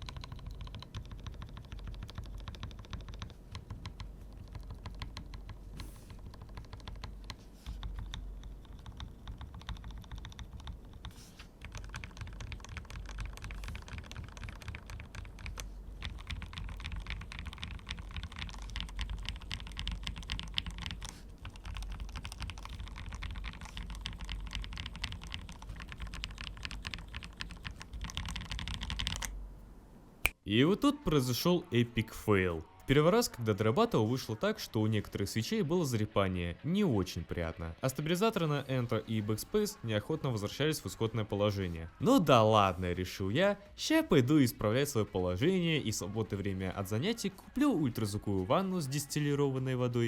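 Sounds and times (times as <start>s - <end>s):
mechanical keyboard typing: 0.0s - 29.4s.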